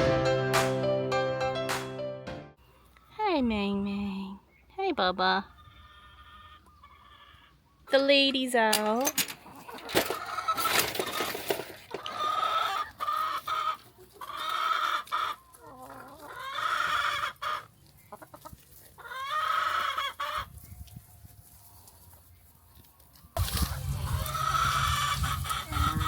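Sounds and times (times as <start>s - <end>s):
chickens calling: 2.6s - 3.1s, 4.4s - 8.2s, 8.8s - 26.0s
chickens clucking: 2.6s - 3.1s, 5.3s - 8.0s, 9.3s - 26.0s.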